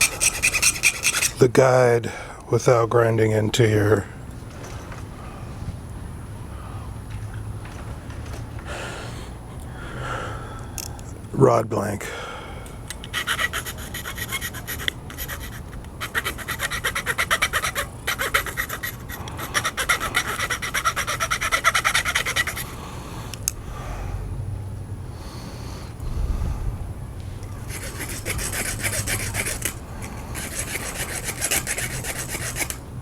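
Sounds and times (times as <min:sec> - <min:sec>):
file rasping on metal: 0:00.0 - 0:01.4, 0:13.0 - 0:22.6, 0:27.6 - 0:32.8.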